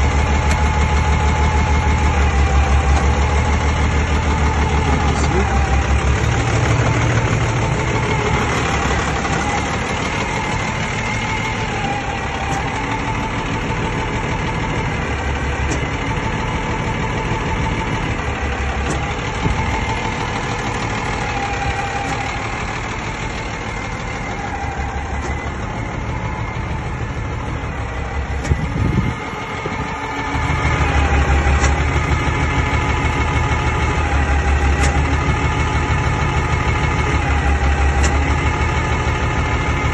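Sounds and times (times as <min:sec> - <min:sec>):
forklift diesel engine running: 0:00.0 - 0:39.9.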